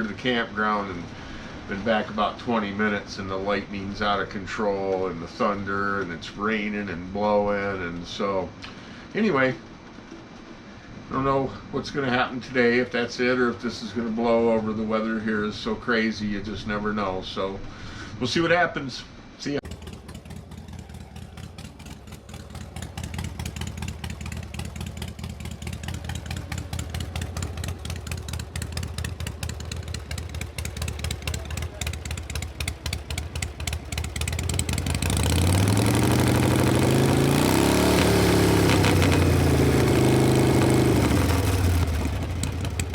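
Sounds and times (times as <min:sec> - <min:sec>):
motorcycle engine idling and revving: 0:19.6 - 0:42.9.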